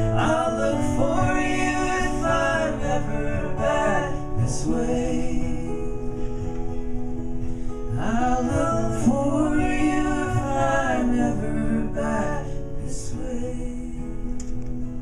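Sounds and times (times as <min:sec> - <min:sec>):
strummed acoustic guitar: 0:00.0 - 0:15.0.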